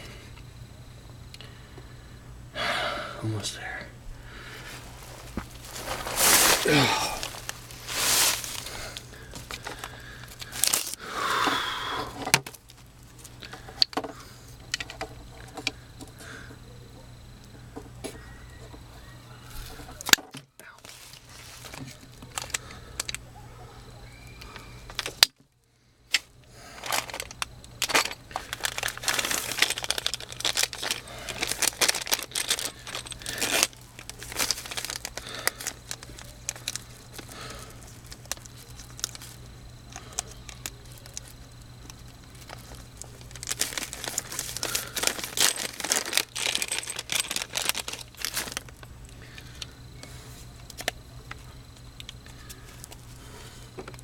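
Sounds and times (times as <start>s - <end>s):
steady low hum: 0.0s - 54.0s
material crinkling and rustling: 4.6s - 11.0s, 20.8s - 23.2s, 26.8s - 48.9s.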